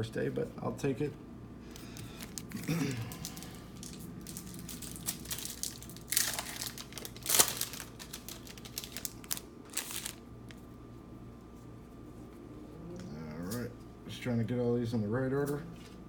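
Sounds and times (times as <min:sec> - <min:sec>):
trading cards being shuffled: 0:01.7 - 0:10.6.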